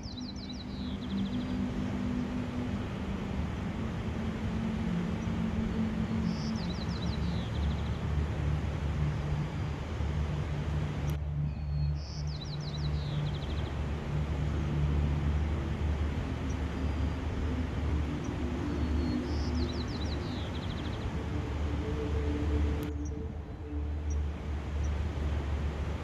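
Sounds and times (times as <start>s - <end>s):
low hum: 0.0s - 26.0s
rushing outdoor background: 0.0s - 26.0s
songbird singing: 0.0s - 26.0s.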